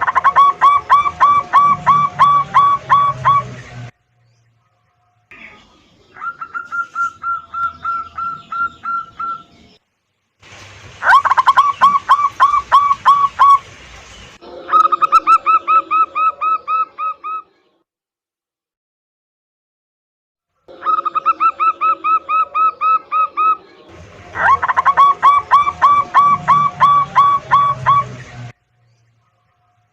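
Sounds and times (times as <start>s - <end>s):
doves cooing: 0.0s - 3.9s, 5.3s - 9.8s, 10.9s - 17.5s, 20.7s - 28.5s.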